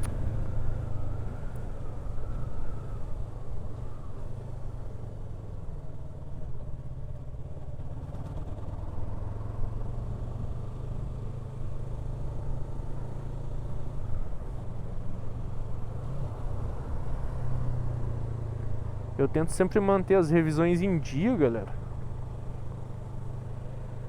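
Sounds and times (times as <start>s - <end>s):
motorcycle engine running steadily: 3.0s - 15.9s.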